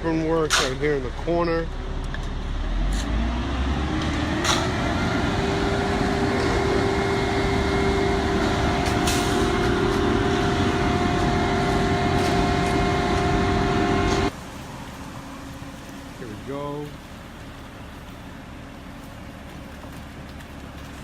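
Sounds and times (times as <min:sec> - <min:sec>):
diesel truck engine revving: 0:01.1 - 0:14.3
concrete discharging: 0:03.7 - 0:15.0.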